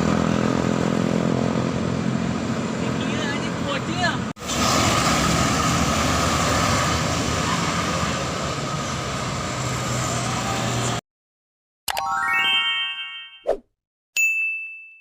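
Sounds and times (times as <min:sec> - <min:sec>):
bus diesel engine running: 0:00.0 - 0:11.0
road noise: 0:00.0 - 0:11.0.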